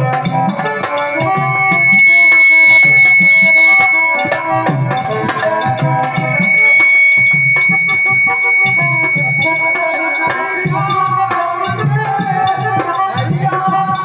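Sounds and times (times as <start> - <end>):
rattling shaker percussion: 0.0 - 14.0
long held high note: 0.2 - 11.7.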